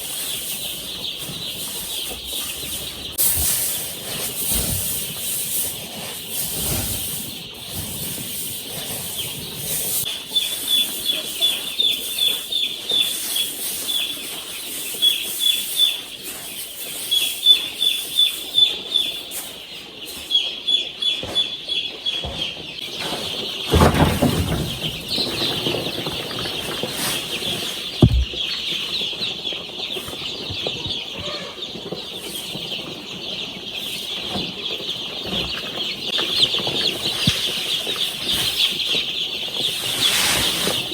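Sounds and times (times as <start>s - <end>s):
chicks peeping: 0.0s - 40.9s
dull thump: 28.0s - 28.4s
sharp knock: 28.0s - 28.4s.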